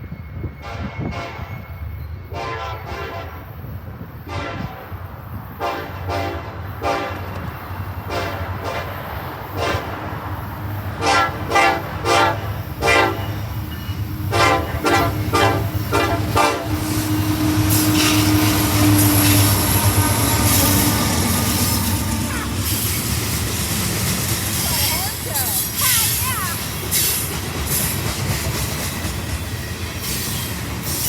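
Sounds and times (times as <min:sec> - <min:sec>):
passing train hiss: 0:00.0 - 0:31.0
locomotive air horn toots: 0:00.6 - 0:01.6, 0:02.3 - 0:03.5, 0:04.3 - 0:04.9, 0:05.6 - 0:07.2, 0:08.1 - 0:10.1, 0:10.9 - 0:13.5, 0:14.2 - 0:23.1.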